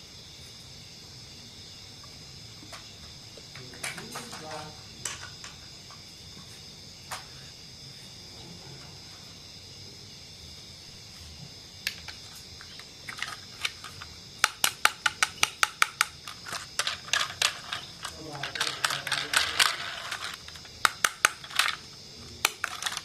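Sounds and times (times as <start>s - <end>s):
model train wheels clicking: 13.1s - 21.8s.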